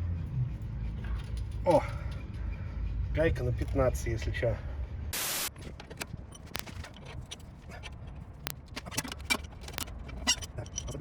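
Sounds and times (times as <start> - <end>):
metallic clicks of hand wrench: 5.9 - 11.0.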